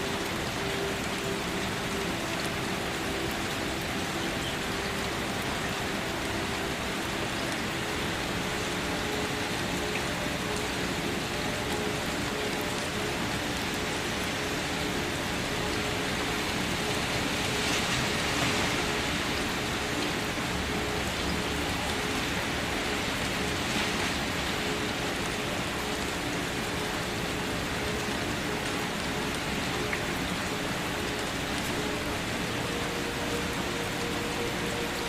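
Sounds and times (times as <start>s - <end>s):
rain falling: 0.0s - 35.0s.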